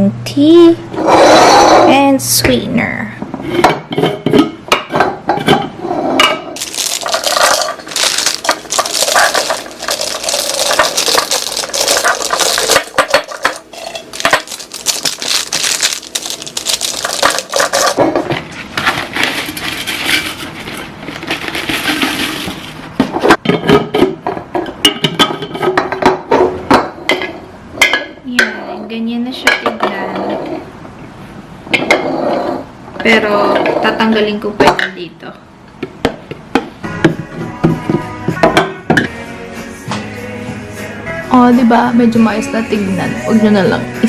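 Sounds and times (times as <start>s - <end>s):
container clicks: 6.6s - 18.0s
small packets rustling and pattering: 6.6s - 18.0s.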